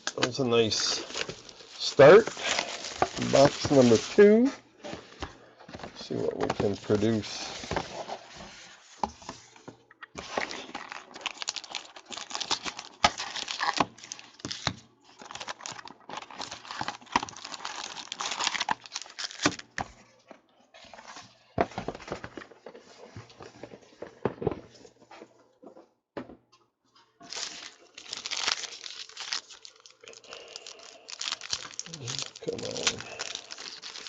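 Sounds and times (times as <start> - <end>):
plastic packaging crinkling and tearing: 0.0 - 4.5, 10.2 - 19.8, 27.2 - 34.0.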